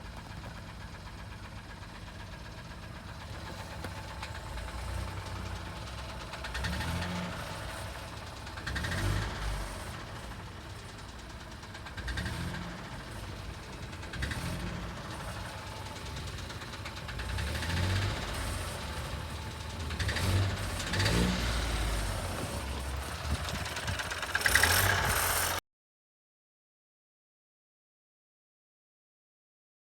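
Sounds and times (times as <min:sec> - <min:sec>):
car engine knocking: 0:00.0 - 0:25.6.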